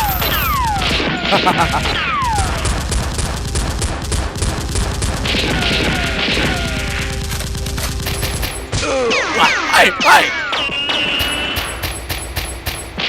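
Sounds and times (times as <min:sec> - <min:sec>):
rapid automatic gunfire: 0:00.0 - 0:08.7.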